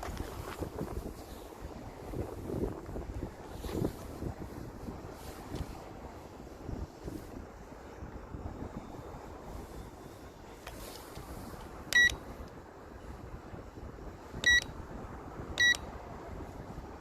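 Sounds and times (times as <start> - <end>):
wind buffeting microphone: 0.0 - 17.0
short electronic beeps: 11.9 - 12.2, 14.4 - 14.7, 15.6 - 15.8.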